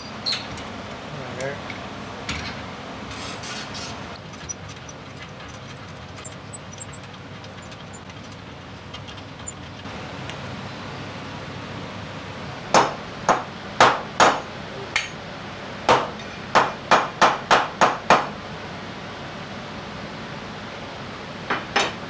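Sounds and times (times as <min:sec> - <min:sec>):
rapid high-pitched ticks: 0:04.1 - 0:09.9.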